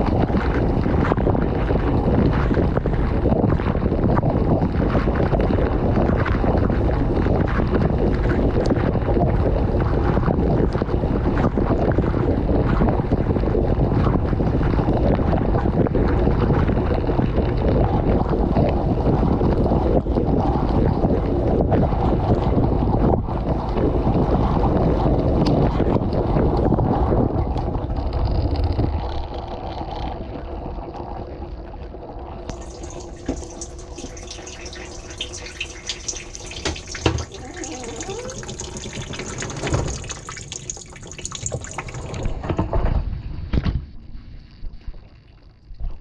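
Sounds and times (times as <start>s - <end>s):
water dripping: 32.5s - 42.4s
water splashing in dishwasher: 32.5s - 42.7s.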